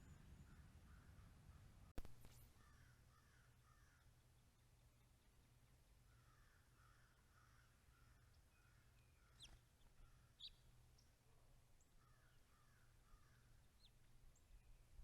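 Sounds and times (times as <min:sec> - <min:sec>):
distant bird calls: 0:06.1 - 0:11.2, 0:11.8 - 0:15.0
birds chirping: 0:08.2 - 0:11.2.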